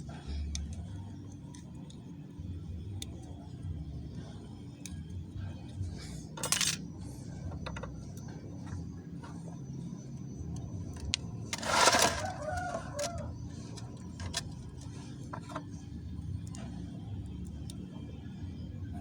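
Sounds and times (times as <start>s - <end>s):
steady low hum: 0.0s - 19.0s
light clicks of metal work: 0.2s - 2.1s, 3.0s - 3.4s, 4.7s - 18.0s
rooster crowing: 11.7s - 13.5s.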